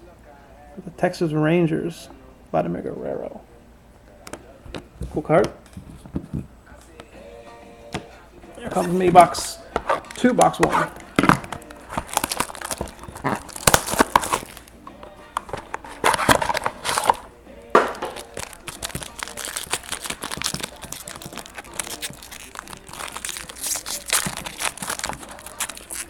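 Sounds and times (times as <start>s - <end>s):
plastic wrapping crinkling and tearing: 8.6s - 14.8s, 15.4s - 17.2s, 17.9s - 26.0s.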